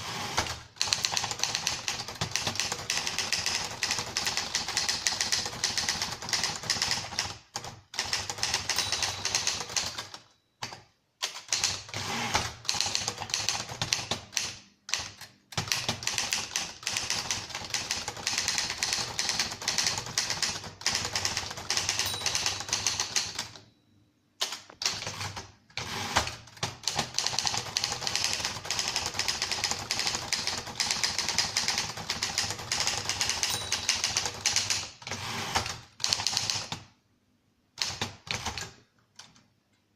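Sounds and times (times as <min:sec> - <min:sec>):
manual typewriter typing: 0:00.0 - 0:23.6, 0:24.4 - 0:36.9, 0:37.8 - 0:39.4.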